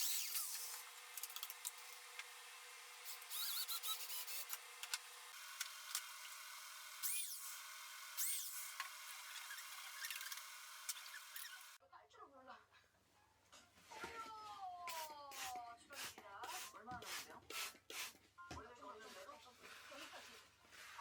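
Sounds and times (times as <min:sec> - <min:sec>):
high squeaks: 0:03.0 - 0:04.6, 0:08.2 - 0:11.8.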